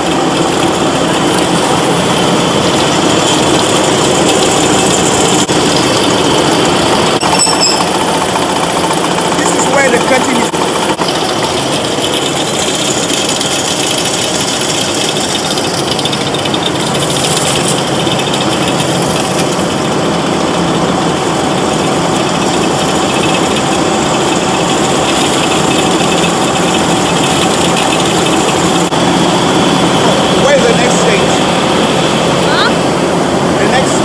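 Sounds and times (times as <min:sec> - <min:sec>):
factory machinery running: 0:00.0 - 0:34.0.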